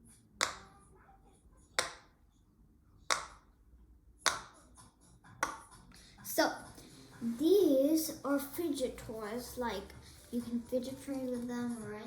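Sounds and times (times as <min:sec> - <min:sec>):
pop it toy bubbles popping: 0:00.4 - 0:00.7, 0:01.8 - 0:02.1, 0:03.1 - 0:03.4, 0:04.3 - 0:04.6, 0:05.4 - 0:05.6.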